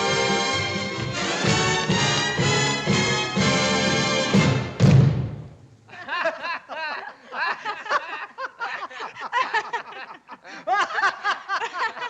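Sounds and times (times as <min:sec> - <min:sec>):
people laughing heartily: 0:05.9 - 0:12.0.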